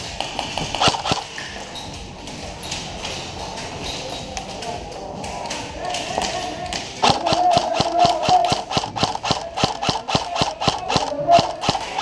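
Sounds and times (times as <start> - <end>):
airsoft gun firing: 0.7 - 1.3, 7.0 - 12.0.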